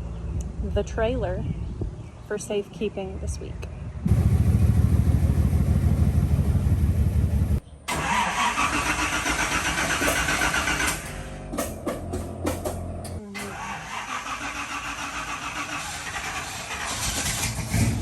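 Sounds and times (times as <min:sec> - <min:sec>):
engine running with low pulse: 0:04.0 - 0:07.6, 0:10.0 - 0:14.0
higher-pitched engine sound: 0:04.1 - 0:07.6.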